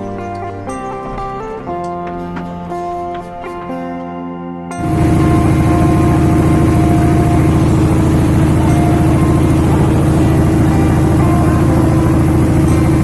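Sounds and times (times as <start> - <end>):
engine running steadily: 4.8 - 13.0.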